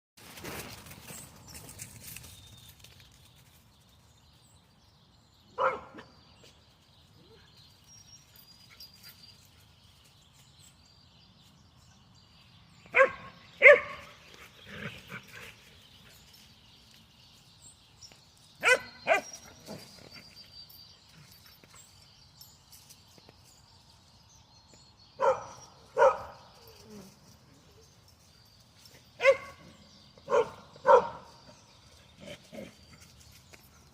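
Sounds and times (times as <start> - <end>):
dog barking: 5.6 - 6.0, 12.9 - 14.0, 18.6 - 19.3, 25.2 - 26.3, 29.2 - 29.6, 30.3 - 31.2.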